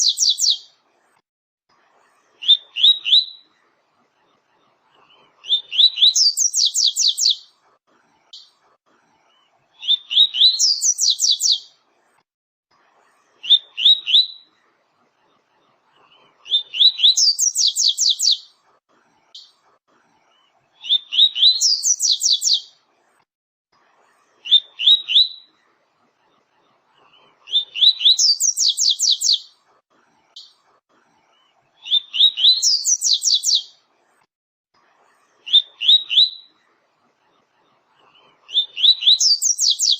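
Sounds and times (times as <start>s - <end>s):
bird singing trilled phrases: 0.0s - 0.6s, 2.4s - 3.4s, 5.5s - 7.4s, 9.8s - 11.7s, 16.5s - 18.5s, 20.8s - 22.7s, 27.5s - 29.5s, 31.9s - 33.7s, 38.5s - 39.9s.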